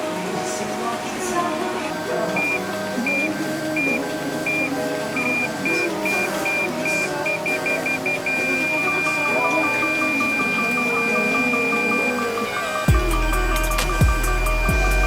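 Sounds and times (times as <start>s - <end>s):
background music: 0.0s - 15.0s
parking sensor warning beeps: 2.0s - 13.0s.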